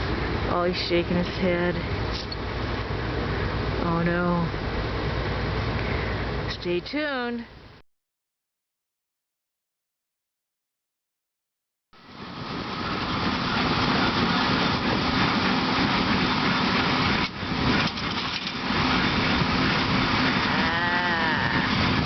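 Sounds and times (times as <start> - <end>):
tractor engine running: 12.2 - 20.6
hay baler working: 12.3 - 22.0.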